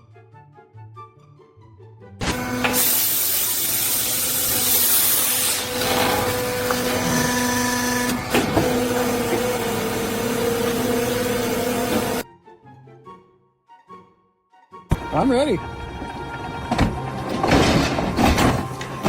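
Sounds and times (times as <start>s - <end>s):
machine humming: 2.2s - 12.2s
machine hissing: 2.3s - 12.2s.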